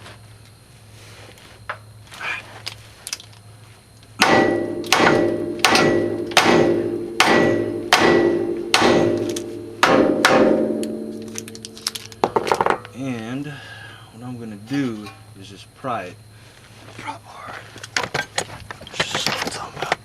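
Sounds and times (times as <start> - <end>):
hammer striking metal: 4.2 - 12.9.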